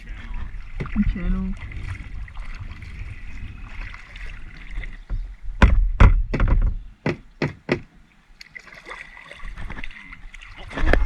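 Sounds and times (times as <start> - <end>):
knocks on kayak hull: 5.0 - 7.9.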